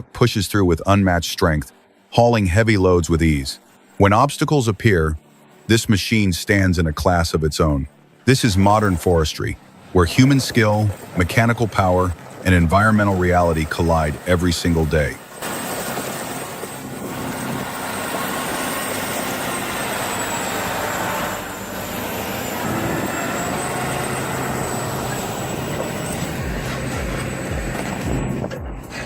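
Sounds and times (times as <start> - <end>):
heavy vehicle engine humming: 6.8 - 29.0.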